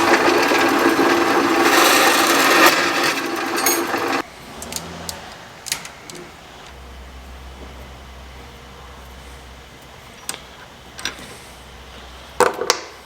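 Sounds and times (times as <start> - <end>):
hand tool rasping metal tube: 0.0 - 4.2.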